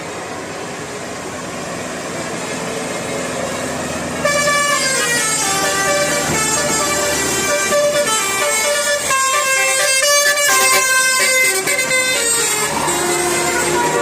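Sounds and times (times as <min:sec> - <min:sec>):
traffic and engine noise: 0:00.0 - 0:14.0
multi-tone bus air horn tune: 0:04.2 - 0:14.0.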